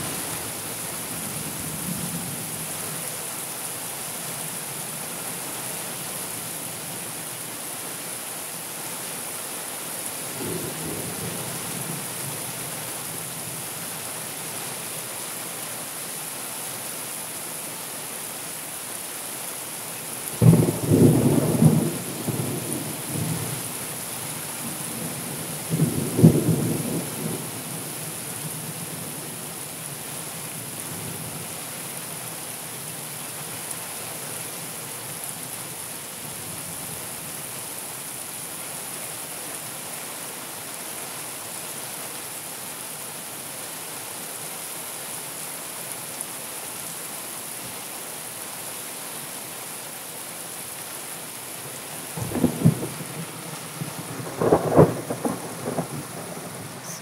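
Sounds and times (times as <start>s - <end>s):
rain hiss: 0.0s - 57.0s
thunder rumbling: 52.2s - 57.0s.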